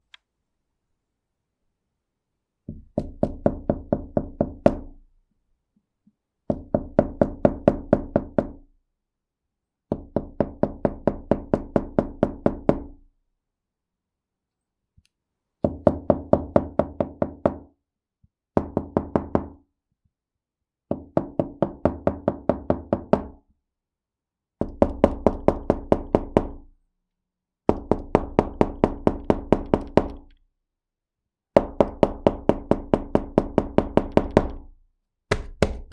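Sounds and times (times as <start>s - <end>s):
knuckles knocking on wooden door: 2.7s - 5.0s, 6.5s - 8.6s, 9.9s - 12.9s, 15.6s - 17.7s, 18.6s - 19.6s, 20.9s - 23.4s, 24.6s - 26.6s, 27.7s - 30.3s, 31.6s - 34.7s, 35.3s - 35.9s.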